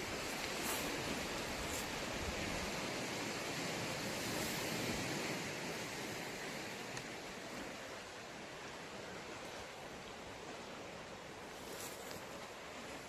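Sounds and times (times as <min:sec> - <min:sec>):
sea waves washing on shore: 0:00.0 - 0:13.0.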